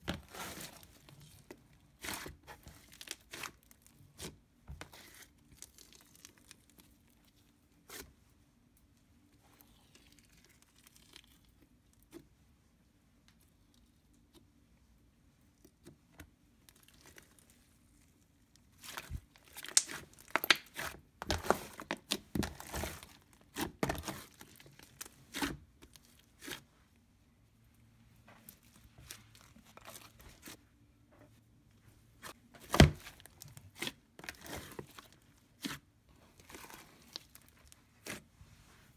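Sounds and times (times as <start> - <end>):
slime popping and squishing: 18.8 - 25.6.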